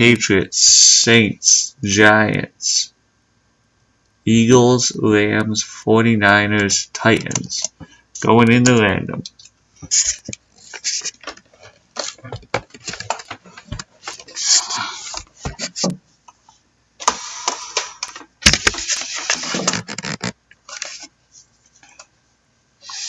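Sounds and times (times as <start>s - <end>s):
rustling noise: 9.8s - 16.6s.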